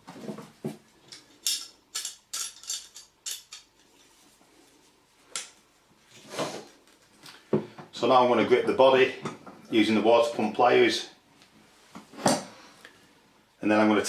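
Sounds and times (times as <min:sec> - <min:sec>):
metal tools clinking and scraping: 0:01.1 - 0:04.2.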